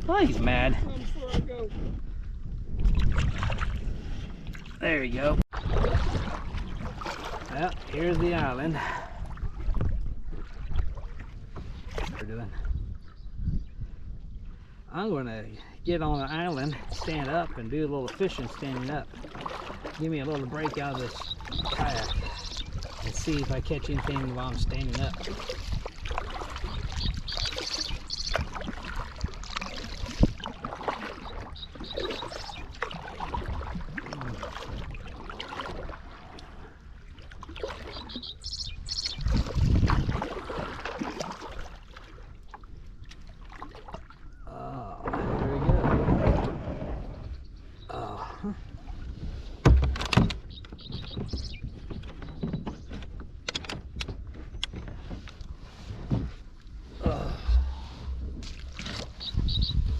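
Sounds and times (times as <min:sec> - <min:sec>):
water splashing and trickling: 0:00.0 - 0:13.0, 0:15.4 - 0:59.9
knocks and clunks: 0:49.6 - 0:55.3, 0:57.0 - 0:59.2
heavy thump: 0:57.0 - 0:58.6.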